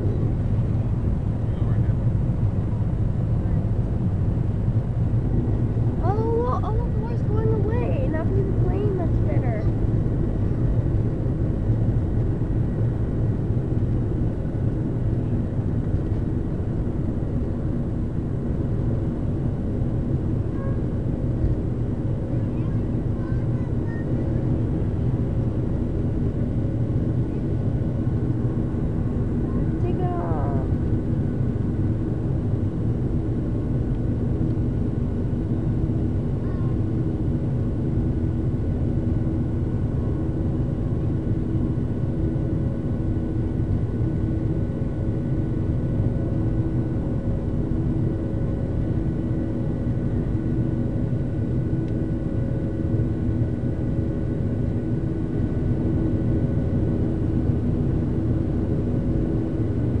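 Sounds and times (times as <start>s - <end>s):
jet engine drone in cabin: 0.0s - 60.0s
steady engine tones: 3.0s - 10.6s.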